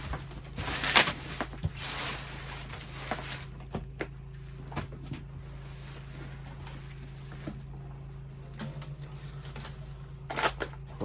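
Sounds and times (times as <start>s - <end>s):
cardboard box rustling and scraping: 0.0s - 7.7s.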